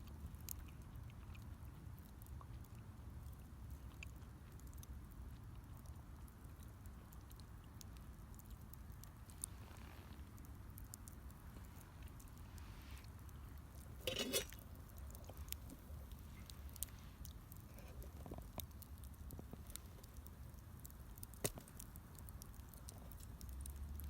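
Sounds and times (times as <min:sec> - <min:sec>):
wood fire crackling: 0:09.0 - 0:24.0.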